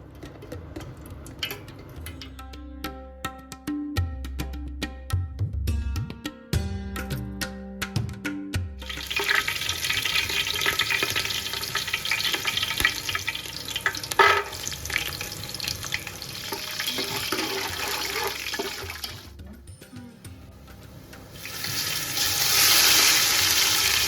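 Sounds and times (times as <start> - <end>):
food sizzling in hot oil: 8.8 - 19.3, 21.0 - 24.0.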